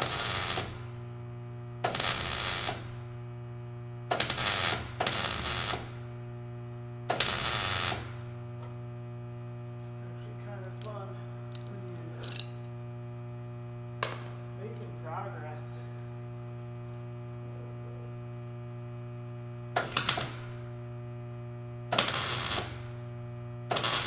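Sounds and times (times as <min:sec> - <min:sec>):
welding crackle: 0:00.0 - 0:01.0, 0:01.8 - 0:03.1, 0:04.1 - 0:06.0, 0:07.1 - 0:08.2, 0:19.8 - 0:20.5, 0:21.9 - 0:23.0, 0:23.7 - 0:24.0
steady electrical hum: 0:00.0 - 0:24.0
ringing metallic clink: 0:14.0 - 0:14.8.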